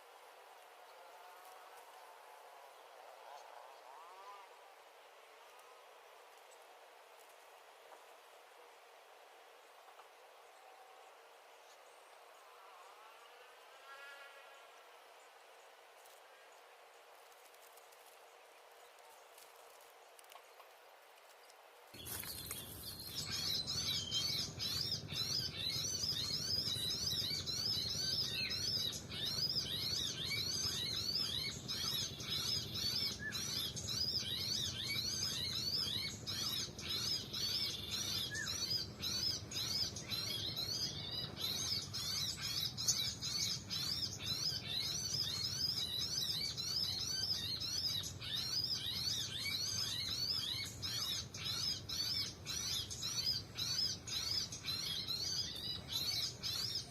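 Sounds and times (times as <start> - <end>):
small birds chirping: 17.2 - 56.9.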